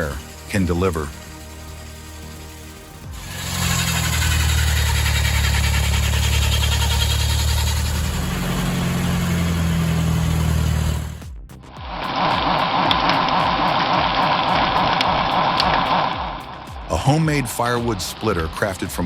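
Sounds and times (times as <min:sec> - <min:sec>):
saw machine humming and hissing: 0:00.0 - 0:11.3.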